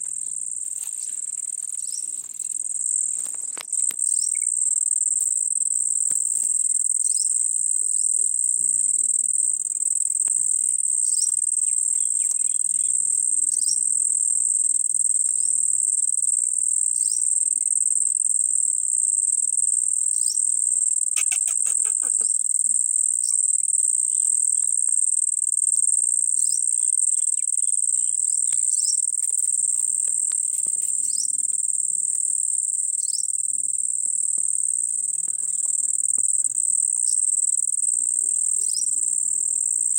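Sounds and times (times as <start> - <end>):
high-pitched insect drone: 0.0 - 39.9
insect chirps: 0.0 - 39.9
rapid insect trill: 0.0 - 39.9.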